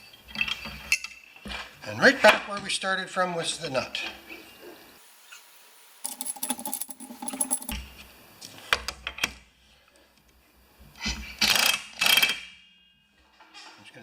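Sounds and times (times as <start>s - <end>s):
metal clicking and rattling: 6.1s - 7.8s.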